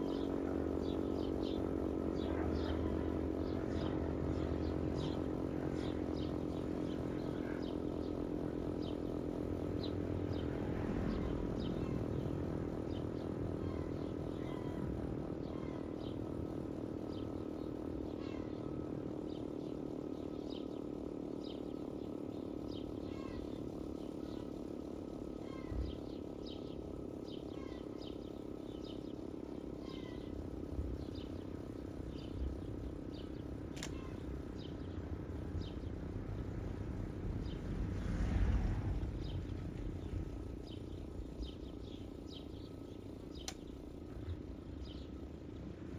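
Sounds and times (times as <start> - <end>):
birds chirping: 0.0 - 45.9.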